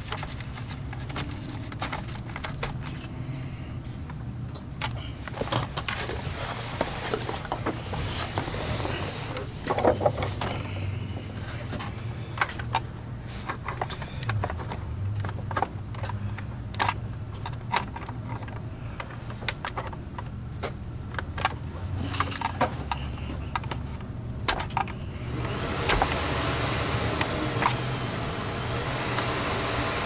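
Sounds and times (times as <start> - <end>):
plastic parts clicking: 0.0 - 3.1, 12.4 - 25.0.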